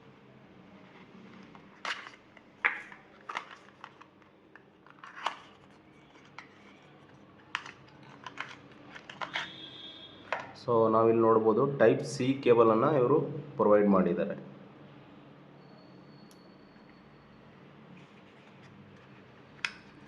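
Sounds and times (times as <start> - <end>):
plastic packaging rustling: 1.3 - 9.6.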